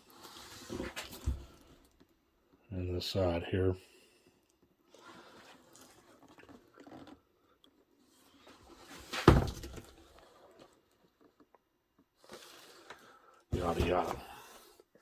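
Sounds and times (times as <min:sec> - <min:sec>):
cardboard rustling and scuffing: 0:08.5 - 0:10.7, 0:13.6 - 0:14.5
loud cardboard box thump: 0:09.1 - 0:09.8.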